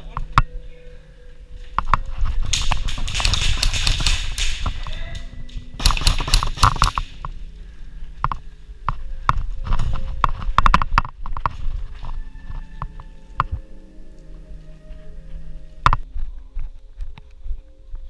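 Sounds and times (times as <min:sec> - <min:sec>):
airsoft guns firing: 0:02.5 - 0:07.2.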